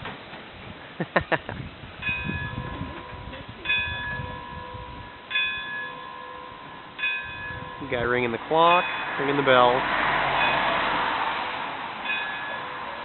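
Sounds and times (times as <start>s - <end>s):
clock bell ringing: 2.0s - 11.0s, 12.0s - 13.0s.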